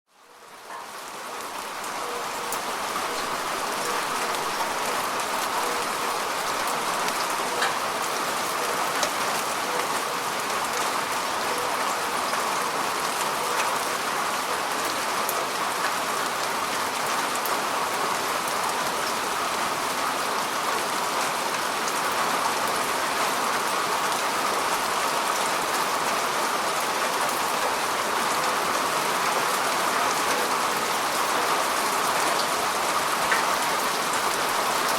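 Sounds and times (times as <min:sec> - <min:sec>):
steady rain hiss: 0:00.1 - 0:34.9.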